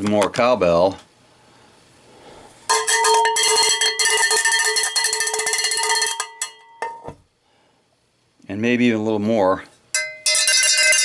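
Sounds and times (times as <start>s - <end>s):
cowbell struck rapidly: 2.7s - 6.6s, 10.0s - 11.0s.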